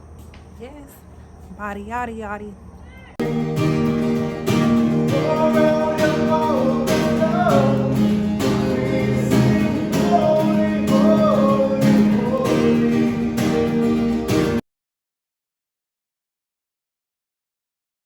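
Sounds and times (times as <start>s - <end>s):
song with guitar and singing: 3.2s - 14.6s.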